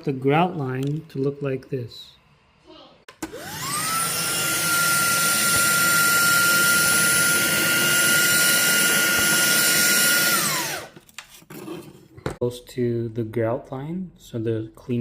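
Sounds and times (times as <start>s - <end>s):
small electric motor whining: 3.2s - 11.0s.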